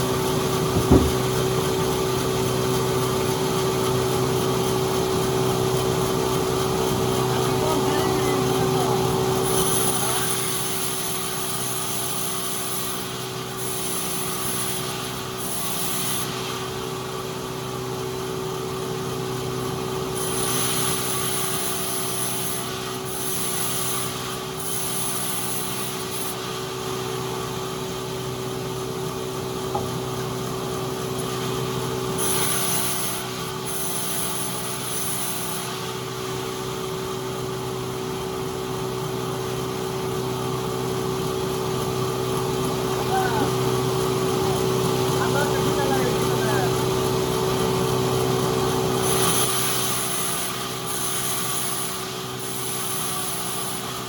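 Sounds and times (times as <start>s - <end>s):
sawmill machinery humming: 0.0s - 15.9s, 25.1s - 54.0s.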